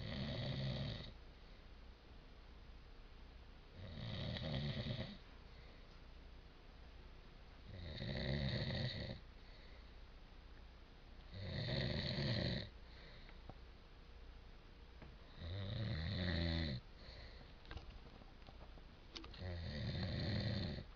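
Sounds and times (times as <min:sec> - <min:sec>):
man snoring: 0:00.0 - 0:01.1, 0:03.8 - 0:05.2, 0:07.7 - 0:09.2, 0:11.3 - 0:12.7, 0:15.4 - 0:16.8, 0:19.4 - 0:20.9
quiet breathing: 0:00.0 - 0:01.9, 0:03.7 - 0:06.2, 0:07.6 - 0:10.2, 0:11.2 - 0:13.7, 0:15.1 - 0:20.9.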